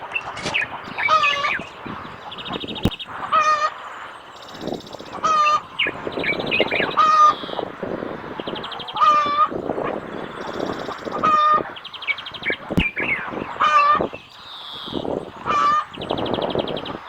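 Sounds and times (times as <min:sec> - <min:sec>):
chattering bird trills: 0:00.0 - 0:17.0
harsh bird calls: 0:00.0 - 0:17.0
sharp click: 0:00.2 - 0:01.8.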